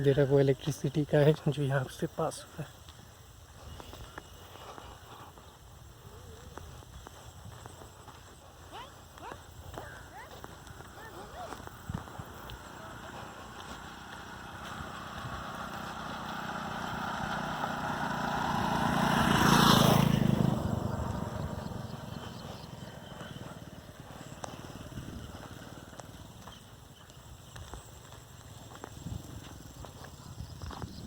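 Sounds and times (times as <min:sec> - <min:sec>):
motor vehicle passing by: 0:06.3 - 0:27.1.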